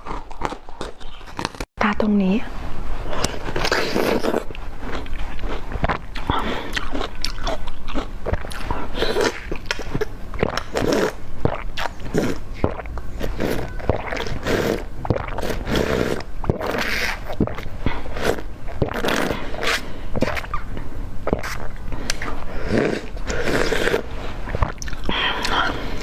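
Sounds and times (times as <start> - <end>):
chewing crunchy food: 0.0 - 1.7, 3.1 - 26.0.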